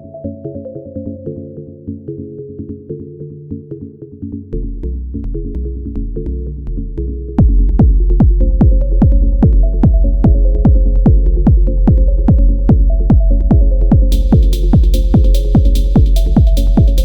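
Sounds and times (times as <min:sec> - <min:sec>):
bass and synth line: 0:04.4 - 0:17.0
kick drum: 0:07.4 - 0:17.0
hissy cymbal or hi-hat: 0:14.1 - 0:17.0.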